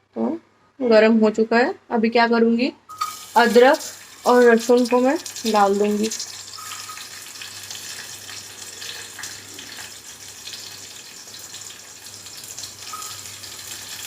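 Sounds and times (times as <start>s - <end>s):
ginger and garlic sizzling in oil: 2.9s - 14.0s.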